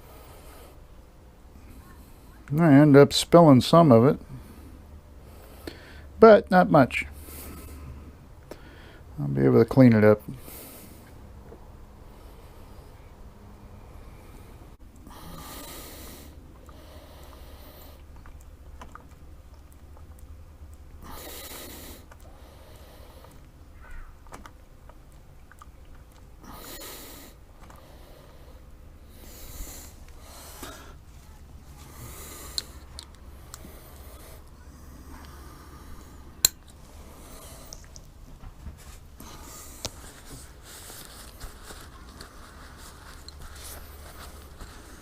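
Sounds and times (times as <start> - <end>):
rustling or wiping: 38.2 - 45.0.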